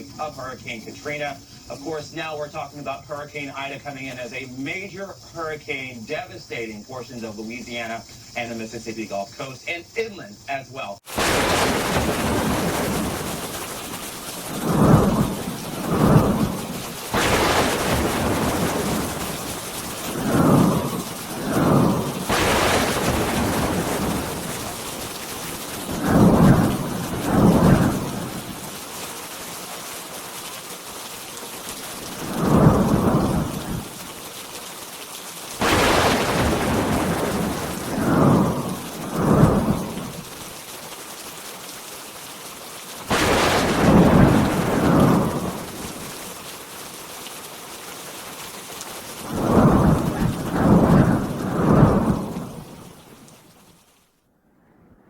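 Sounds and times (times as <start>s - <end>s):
thunder rumbling: 0.0s - 5.5s, 11.1s - 34.6s, 35.4s - 40.8s, 43.0s - 46.9s, 48.6s - 53.8s
heavy rain: 0.0s - 9.8s, 11.0s - 54.2s
loud thunder claps: 11.1s - 29.1s, 31.7s - 34.2s, 35.6s - 40.6s, 43.1s - 46.5s, 49.1s - 53.3s.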